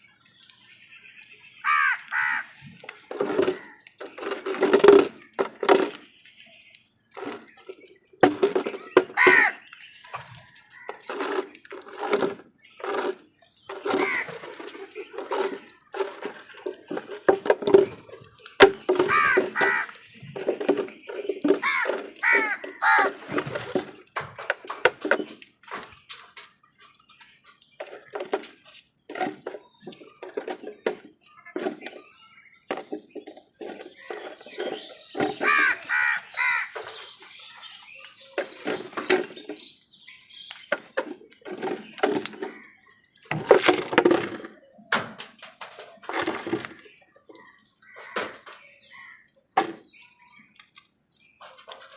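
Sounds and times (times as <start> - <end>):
crows cawing: 1.6 - 2.6, 9.1 - 9.7, 14.0 - 14.4, 19.0 - 20.0, 21.6 - 23.3, 35.4 - 36.8, 47.8 - 49.2.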